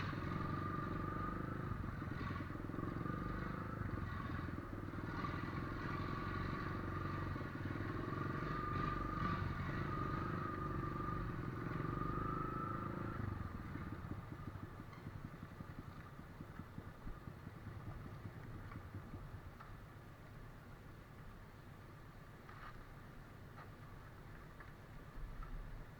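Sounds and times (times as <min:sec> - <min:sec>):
off-road vehicle engine whining: 0:00.0 - 0:19.8.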